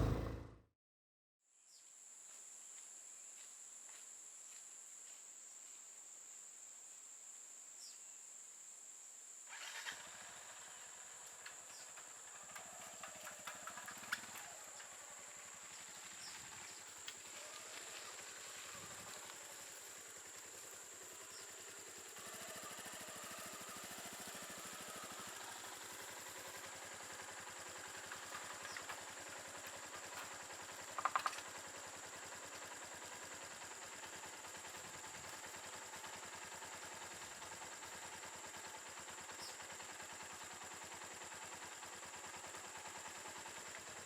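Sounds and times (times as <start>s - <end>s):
motorcycle engine idling: 0.0s - 0.5s, 18.2s - 44.0s.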